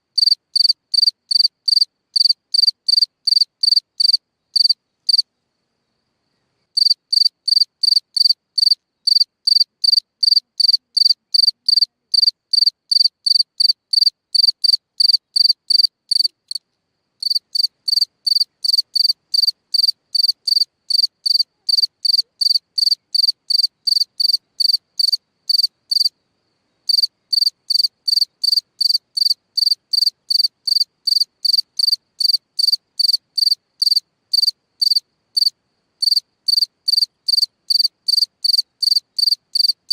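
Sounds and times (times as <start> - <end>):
cricket chirping: 0.1 - 39.9.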